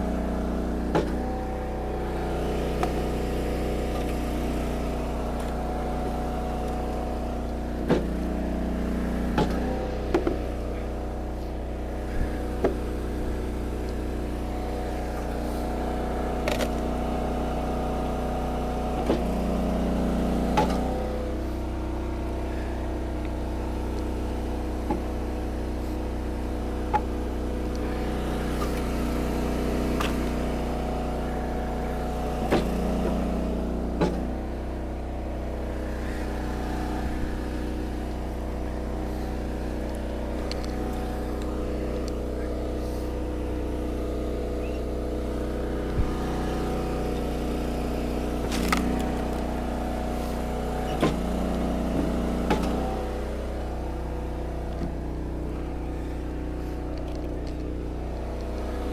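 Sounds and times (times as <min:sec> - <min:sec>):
log splitter engine running: 0:00.0 - 0:58.9
wood cracking on wedge: 0:00.9 - 0:01.2.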